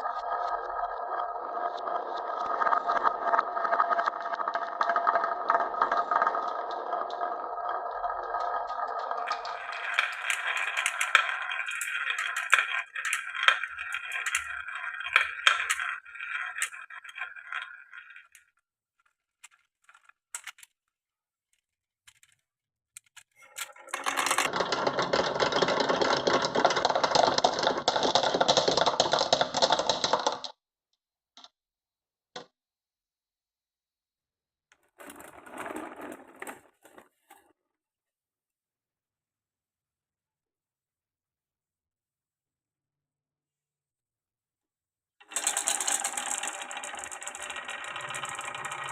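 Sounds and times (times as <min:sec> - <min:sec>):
marbles clattering along tracks: 0:00.0 - 0:20.7, 0:23.0 - 0:30.6, 0:34.8 - 0:37.4, 0:45.2 - 0:48.9.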